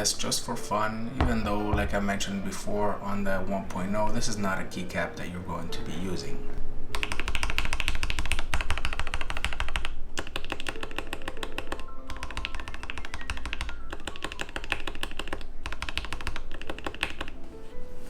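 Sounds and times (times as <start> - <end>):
background music: 0.0 - 18.0
fast typing on mechanical keyboard: 6.9 - 17.4.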